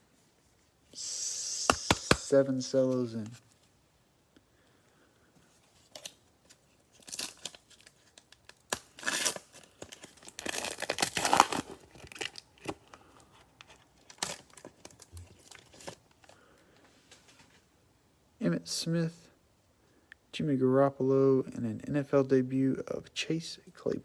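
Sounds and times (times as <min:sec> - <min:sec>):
cellophane wrapper tearing and crinkling: 0:05.8 - 0:13.0, 0:13.6 - 0:16.2.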